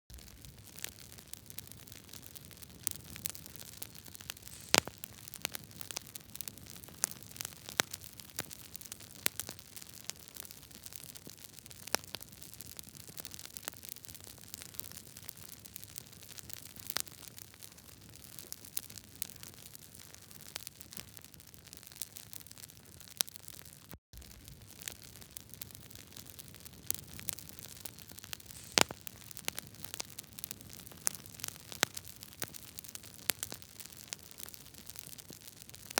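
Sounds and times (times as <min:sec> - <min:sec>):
campfire crackling: 0:00.1 - 0:23.6, 0:24.2 - 0:35.9.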